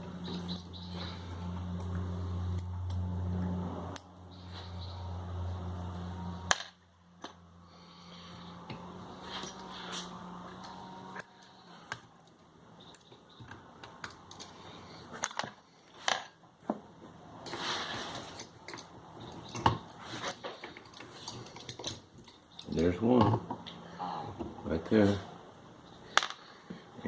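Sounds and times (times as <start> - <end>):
metal tools clicking and scraping: 8.7 - 16.4, 17.4 - 23.4.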